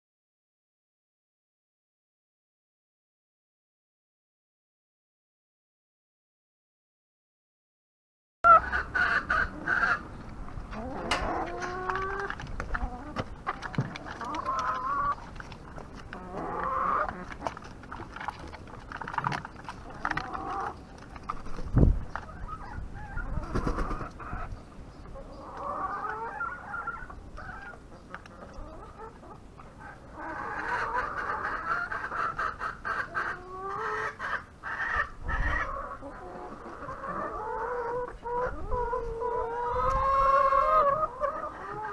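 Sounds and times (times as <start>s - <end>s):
chickens clucking: 8.5s - 41.9s.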